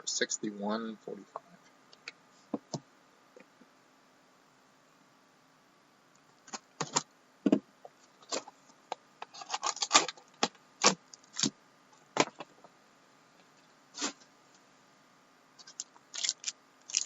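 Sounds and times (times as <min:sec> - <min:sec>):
packaging being torn: 0:09.4 - 0:10.2, 0:15.6 - 0:17.0.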